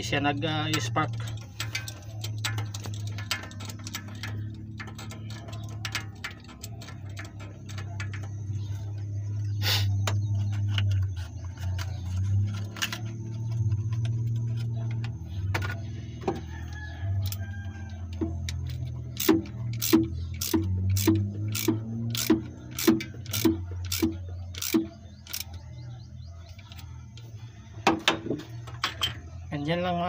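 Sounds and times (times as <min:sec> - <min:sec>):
engine running unevenly: 0:00.0 - 0:29.6
sharp clicks: 0:18.2 - 0:25.6.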